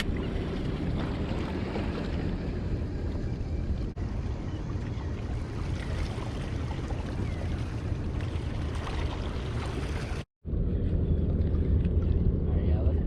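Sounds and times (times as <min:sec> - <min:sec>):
water washing: 0:00.0 - 0:10.3
wind rumble on microphone: 0:00.0 - 0:13.0.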